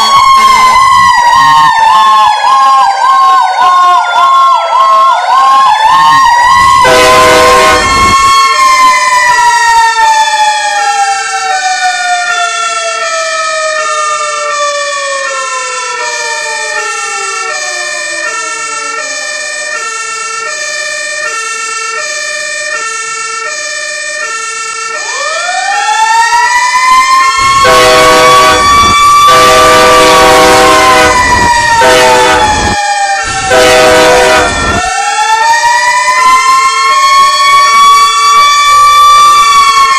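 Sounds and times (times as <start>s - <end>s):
mechanical coaster siren: 0.0s - 39.9s
two-tone hi-lo siren: 0.0s - 39.9s
air horn blasts: 6.7s - 8.2s, 27.4s - 34.9s.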